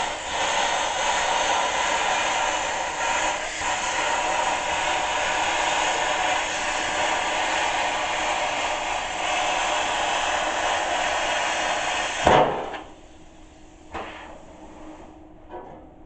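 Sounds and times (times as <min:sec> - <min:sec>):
plasma cutter hissing: 0:00.0 - 0:13.0
sharp knock: 0:12.2 - 0:12.8.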